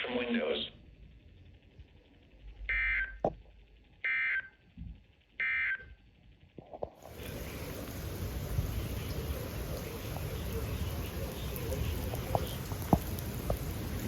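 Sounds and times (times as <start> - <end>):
steady hiss: 7.0 - 14.0.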